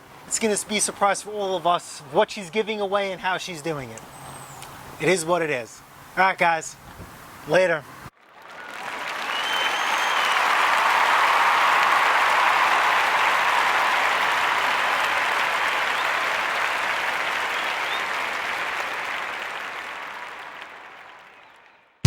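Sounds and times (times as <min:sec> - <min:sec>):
crowd applause: 0:08.2 - 0:21.6.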